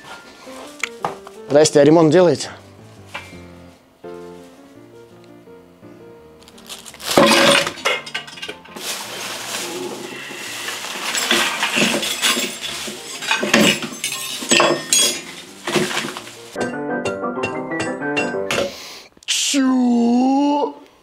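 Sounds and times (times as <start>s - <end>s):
metallic objects clattering: 6.7s - 16.5s.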